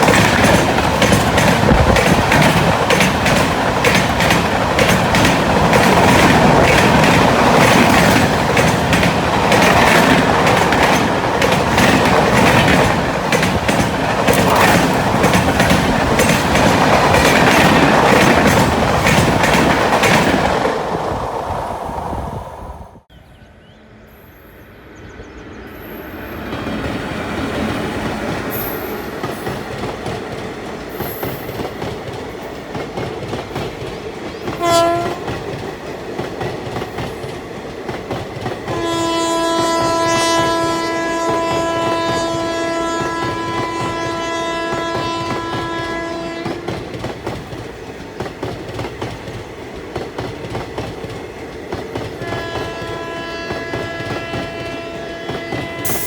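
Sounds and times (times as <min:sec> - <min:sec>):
train wheels clickety-clack: 0:00.0 - 0:21.5, 0:26.4 - 0:56.0
locomotive horn: 0:34.5 - 0:35.4, 0:38.7 - 0:46.9, 0:52.2 - 0:56.0.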